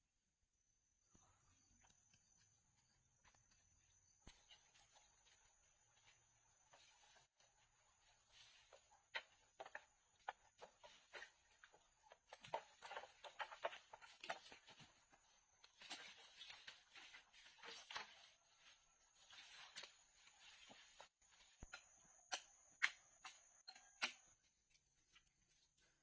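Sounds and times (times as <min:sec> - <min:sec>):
rustling: 0:04.3 - 0:21.6.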